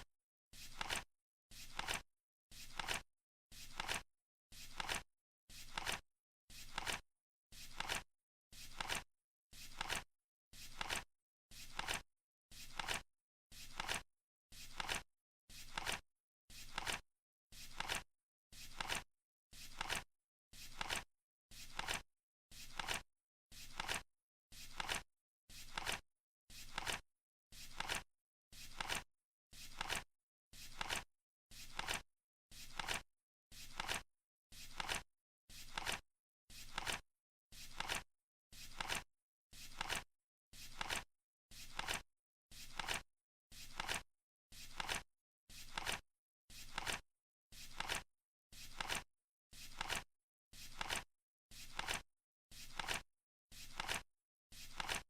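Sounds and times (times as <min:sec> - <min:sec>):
flip clock card flipping: 0:00.7 - 0:01.0, 0:01.7 - 0:02.0, 0:02.7 - 0:03.0, 0:03.7 - 0:04.0, 0:04.7 - 0:05.0, 0:05.7 - 0:06.0, 0:08.7 - 0:09.0, 0:09.7 - 0:10.0, 0:11.7 - 0:12.0, 0:18.7 - 0:19.0, 0:19.7 - 0:20.0, 0:21.7 - 0:22.0, 0:22.7 - 0:23.0, 0:23.7 - 0:24.0, 0:28.7 - 0:29.0, 0:29.7 - 0:30.0, 0:30.7 - 0:31.0, 0:31.7 - 0:32.0, 0:32.7 - 0:33.0, 0:33.7 - 0:34.0, 0:34.7 - 0:35.0, 0:35.7 - 0:36.0, 0:38.7 - 0:39.0, 0:39.7 - 0:40.0, 0:40.7 - 0:41.0, 0:41.7 - 0:42.0, 0:42.7 - 0:43.0, 0:43.7 - 0:44.0, 0:45.7 - 0:46.0, 0:48.7 - 0:49.0, 0:49.7 - 0:50.0, 0:50.7 - 0:51.0, 0:51.7 - 0:52.0, 0:53.7 - 0:54.0, 0:54.7 - 0:55.0.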